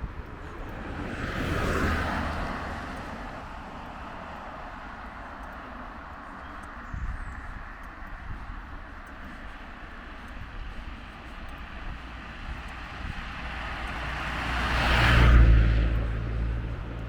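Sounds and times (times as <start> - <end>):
vehicle passing by: 0.5 - 4.7, 12.5 - 17.0.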